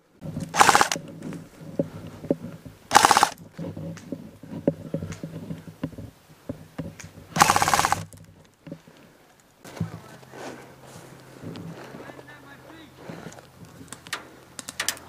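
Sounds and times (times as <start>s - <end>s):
airsoft gun full-auto bursts: 0.5s - 1.0s, 2.9s - 3.4s, 7.4s - 8.1s
faint clicks: 13.3s - 15.0s.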